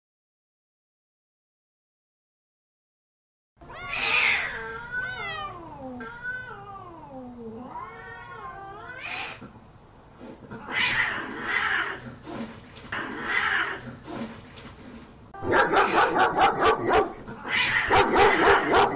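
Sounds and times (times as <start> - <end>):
cat yowling: 3.7 - 9.4, 10.6 - 12.0, 13.0 - 13.8, 15.4 - 18.9.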